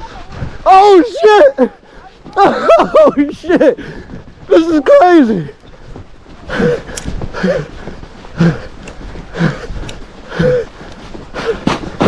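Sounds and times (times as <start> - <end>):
person breathing hard: 6.5 - 11.8.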